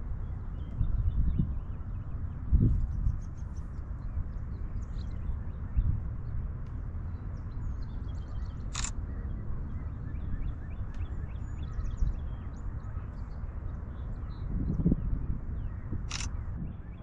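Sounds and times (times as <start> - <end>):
small birds chirping: 7.1 - 16.8.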